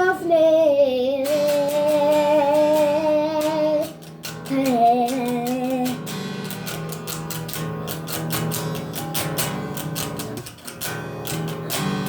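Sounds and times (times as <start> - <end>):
high voice singing: 0.0 - 6.1
strummed acoustic guitar: 0.0 - 12.0.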